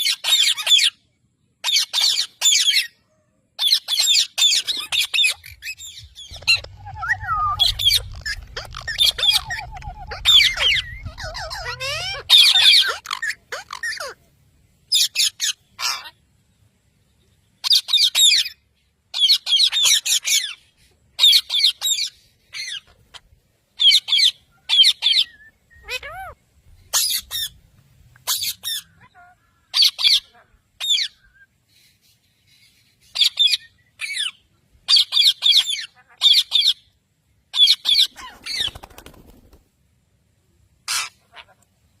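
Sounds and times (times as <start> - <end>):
parrots squawking: 3.6 - 14.2, 14.9 - 16.2, 17.6 - 20.6, 21.2 - 27.6, 28.2 - 31.4, 33.1 - 36.8, 37.6 - 39.1, 40.8 - 41.7.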